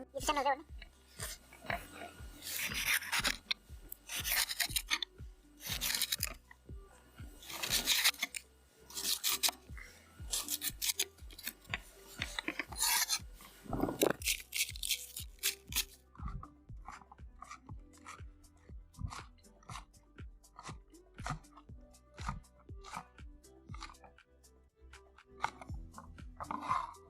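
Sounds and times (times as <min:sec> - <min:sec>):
steady low hum: 0:00.0 - 0:14.2
rough scraping strokes: 0:01.0 - 0:06.4, 0:07.4 - 0:09.7, 0:10.3 - 0:16.0.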